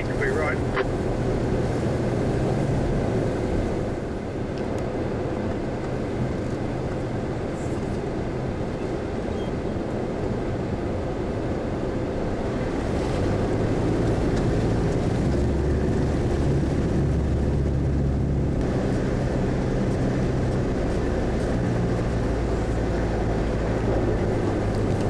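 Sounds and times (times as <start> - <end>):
vehicle engine running: 0.0 - 4.0, 12.5 - 25.0.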